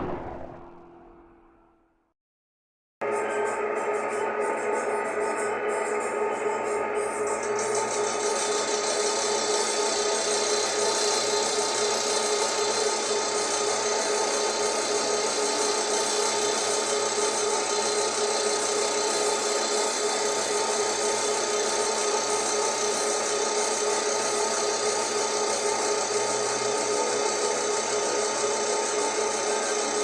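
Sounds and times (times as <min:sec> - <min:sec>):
lathe whining hiss: 0:07.6 - 0:30.0.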